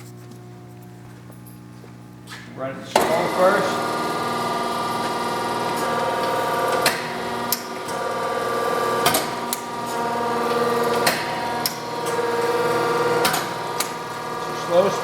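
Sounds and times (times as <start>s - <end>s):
press brake motor humming: 0.0s - 15.0s.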